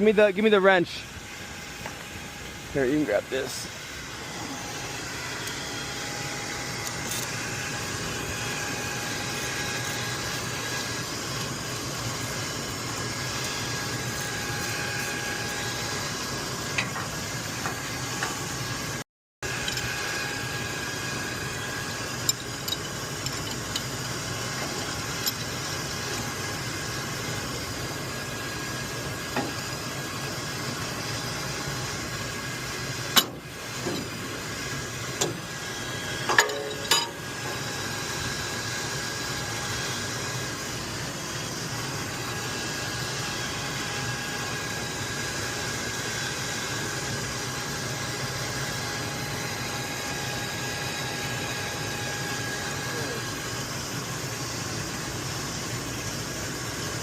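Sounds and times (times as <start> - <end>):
machinery hum with whine: 0.0 - 57.0
hand tools clinking on metal: 36.3 - 37.2.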